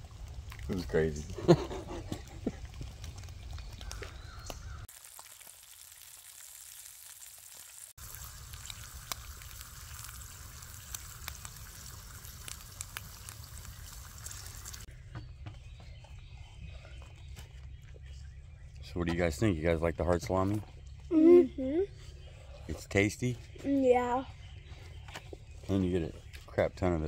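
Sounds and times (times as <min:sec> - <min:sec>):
salami sizzling in a frying pan: 0:04.8 - 0:14.9.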